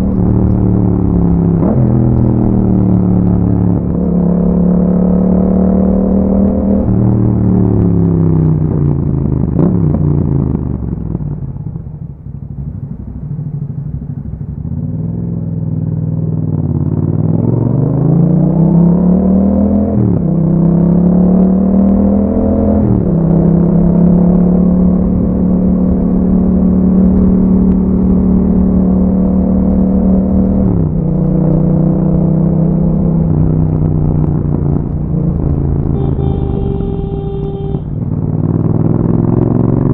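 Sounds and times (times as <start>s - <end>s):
motorcycle engine revving: 0.0s - 19.3s, 30.2s - 39.9s.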